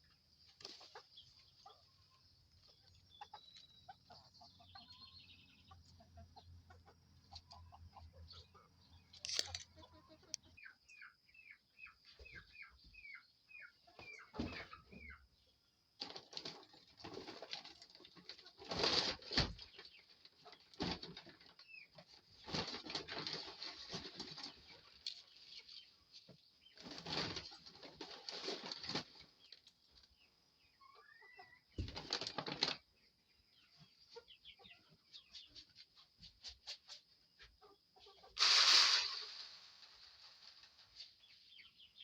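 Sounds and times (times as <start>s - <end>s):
soft chick chirps: 0.0s - 15.8s, 23.8s - 32.1s, 32.8s - 39.3s, 40.8s - 42.0s
chickens wing flapping: 0.5s - 1.2s, 16.0s - 25.3s, 26.8s - 29.7s, 31.8s - 32.8s, 35.2s - 37.5s, 38.3s - 41.3s.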